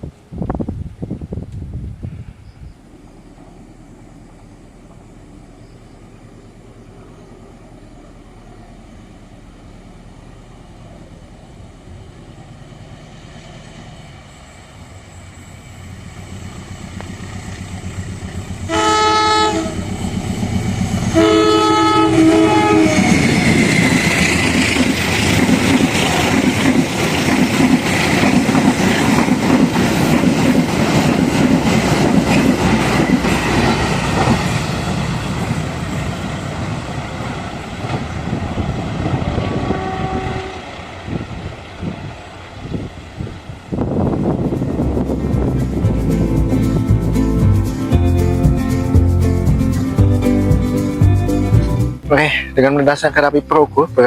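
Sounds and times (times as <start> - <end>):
locomotive engine rumble: 0.1 - 54.0
train wheels clickety-clack: 16.2 - 39.5
train horn blasts: 18.6 - 20.1, 21.0 - 23.5, 39.4 - 40.8.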